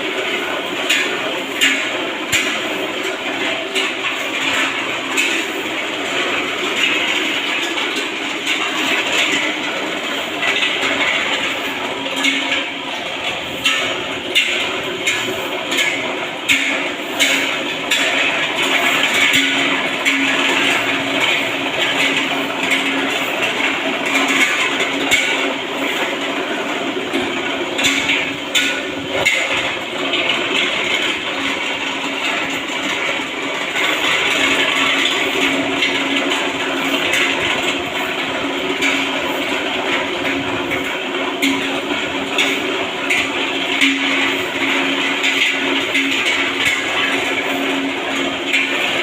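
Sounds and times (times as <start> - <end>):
construction din: 0.0 - 49.0.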